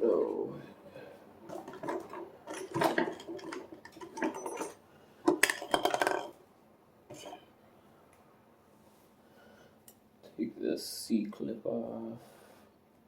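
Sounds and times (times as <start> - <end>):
small metal parts clinking: 1.5 - 6.4.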